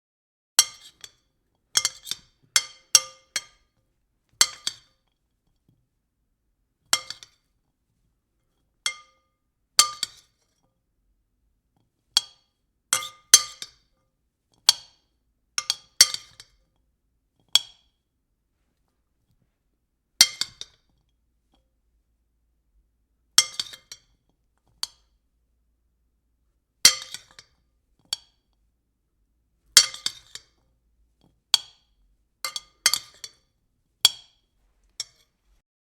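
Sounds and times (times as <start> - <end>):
spoon clinking against a bowl: 8.9 - 9.2, 32.5 - 33.4.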